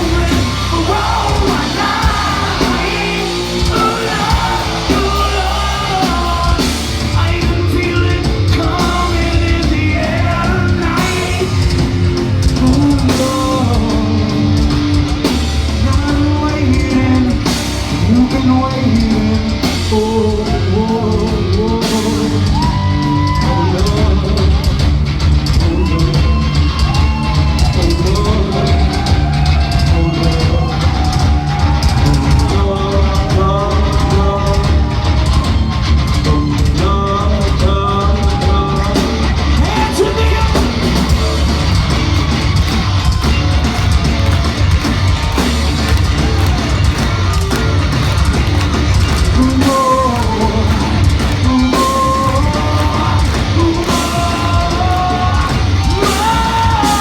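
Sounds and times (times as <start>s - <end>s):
distorted guitars: 0.0s - 57.0s
heavy drum kit: 0.0s - 57.0s
rock band playing loud: 0.0s - 57.0s.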